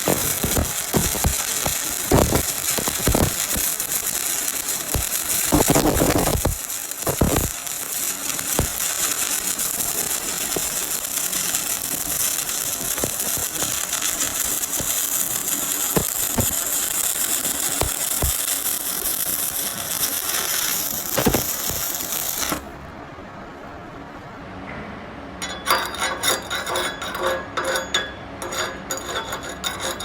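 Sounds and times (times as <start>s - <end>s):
welding arc crackling sizzle: 0.0s - 22.8s.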